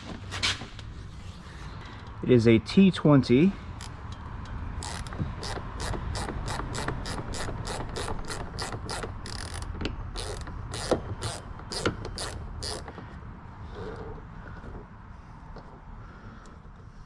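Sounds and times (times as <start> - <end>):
ratchet clicking: 3.8 - 13.0.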